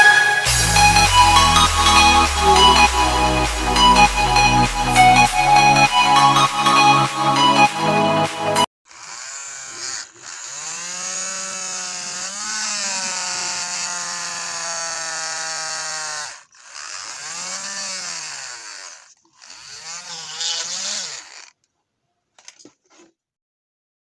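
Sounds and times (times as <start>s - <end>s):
small motor whining: 8.9s - 21.6s.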